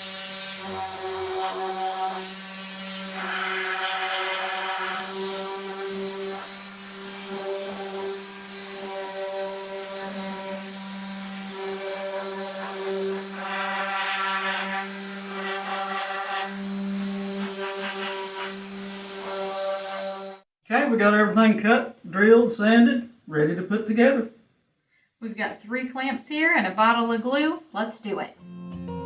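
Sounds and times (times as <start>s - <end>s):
electric sander on wood: 0.0s - 20.5s.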